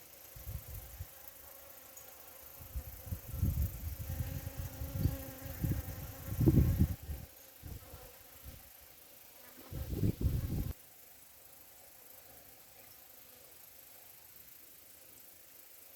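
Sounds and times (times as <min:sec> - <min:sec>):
bee buzzing: 0:00.3 - 0:08.7, 0:09.3 - 0:10.7.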